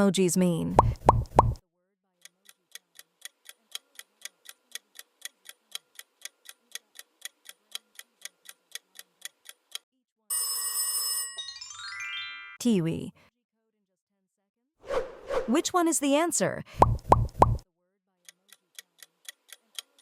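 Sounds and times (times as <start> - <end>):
clock-like ticks: 2.2 - 9.9, 18.2 - 20.0
rising chime tones: 11.4 - 12.6.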